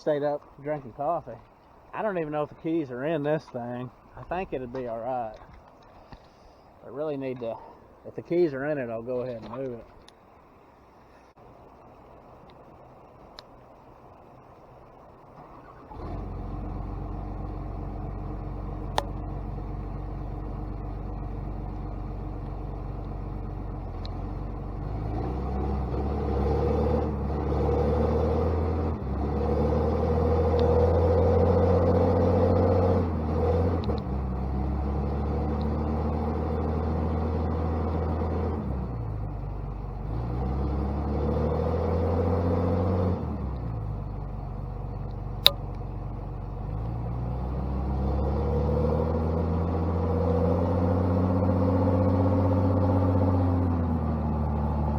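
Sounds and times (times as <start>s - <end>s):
diesel engine revving: 15.4s - 54.9s.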